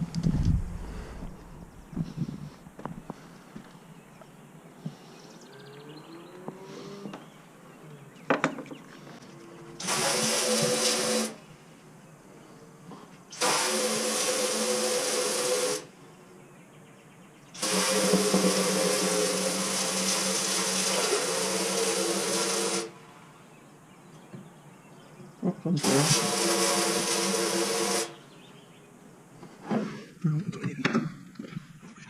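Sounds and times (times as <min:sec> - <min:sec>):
electric power tool running: 0:09.8 - 0:11.4, 0:13.3 - 0:15.9, 0:17.6 - 0:23.0, 0:25.8 - 0:28.2.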